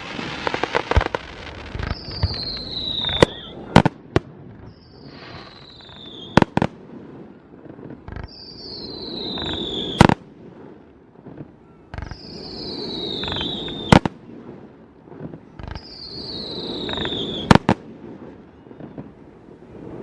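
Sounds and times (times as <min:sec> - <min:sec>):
fireworks launching thump: 0:00.0 - 0:06.8, 0:09.3 - 0:10.3, 0:13.1 - 0:14.2
fireworks loud bang: 0:00.0 - 0:14.3, 0:15.2 - 0:19.0
fireworks whistling: 0:00.0 - 0:20.0.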